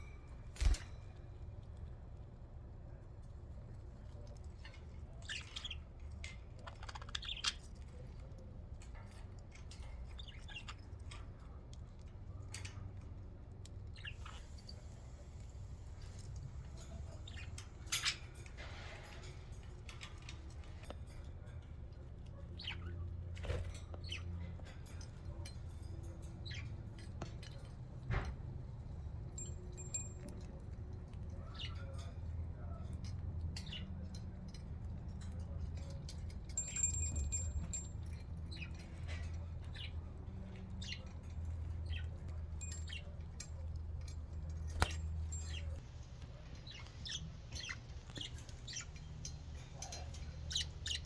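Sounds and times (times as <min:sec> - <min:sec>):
light metallic ringing: 0:29.1 - 0:30.8, 0:33.6 - 0:39.9, 0:40.8 - 0:51.0
budgerigars chirping: 0:46.6 - 0:51.0.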